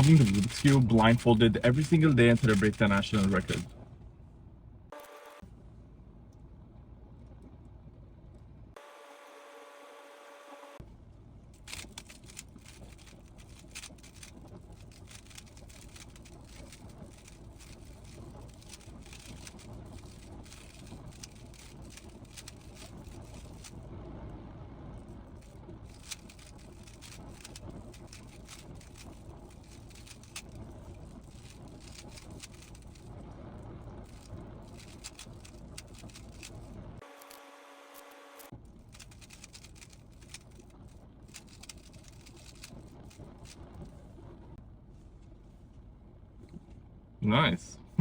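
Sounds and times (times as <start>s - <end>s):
low background hum: 0.0s - 48.0s
plastic cube clicking: 11.7s - 23.7s, 26.0s - 30.5s, 34.1s - 36.6s, 38.9s - 40.5s.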